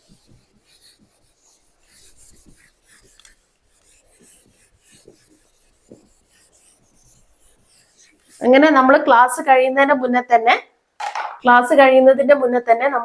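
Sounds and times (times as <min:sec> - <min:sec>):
pen scratching on paper: 0:00.0 - 0:08.9.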